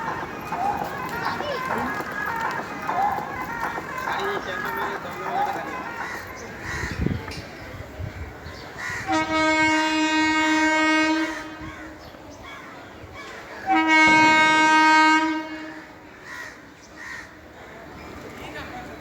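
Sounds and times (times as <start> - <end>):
locomotive horn blasts: 9.1 - 11.7, 13.7 - 16.0.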